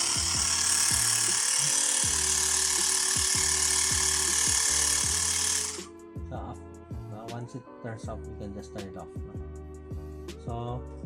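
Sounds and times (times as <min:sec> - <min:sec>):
air compressor buzzing: 0:00.0 - 0:05.9.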